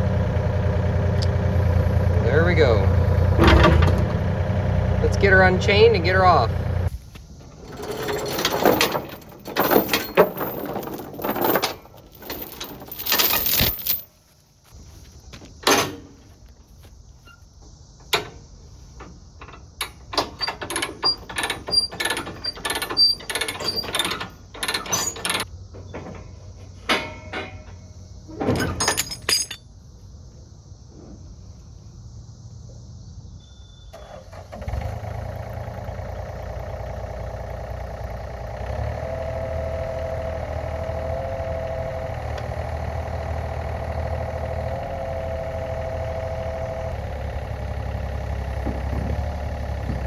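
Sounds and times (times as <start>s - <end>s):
metal chains clanking and rattling: 7.4s - 14.2s, 15.6s - 16.2s, 19.4s - 29.8s.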